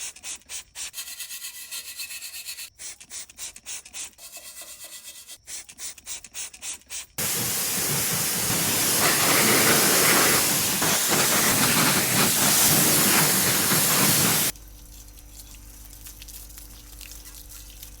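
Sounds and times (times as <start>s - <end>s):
pressure washer spraying: 7.2s - 14.5s
rhythmic rubbing strokes: 7.2s - 14.5s.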